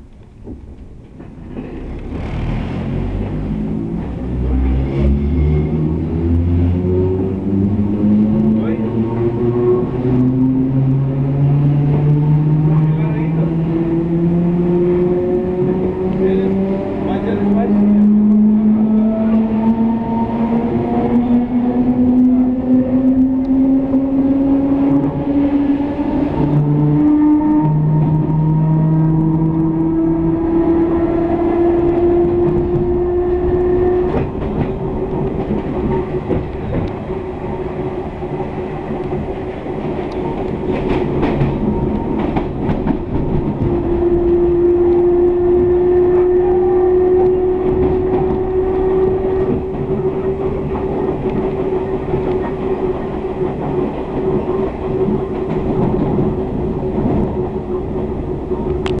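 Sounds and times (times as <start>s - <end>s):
train running rumble: 0.0s - 59.0s
wheels clicking over rail joints: 31.8s - 43.9s.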